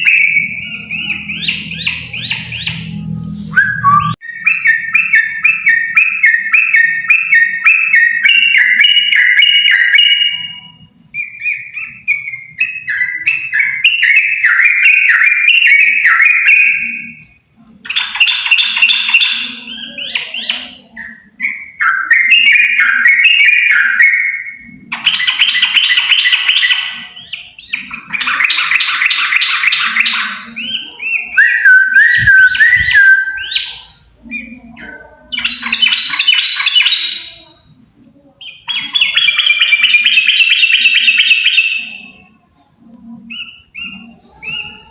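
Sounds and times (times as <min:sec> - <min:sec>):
harsh bird chattering: 0:00.0 - 0:03.0
birds warbling: 0:00.0 - 0:37.8, 0:38.4 - 0:42.5, 0:43.1 - 0:44.9.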